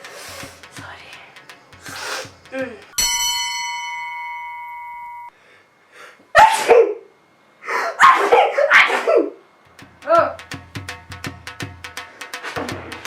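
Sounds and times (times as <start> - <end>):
person sneezing: 1.8 - 2.8, 6.4 - 7.0, 7.7 - 9.4
bell-like ding: 3.0 - 5.4.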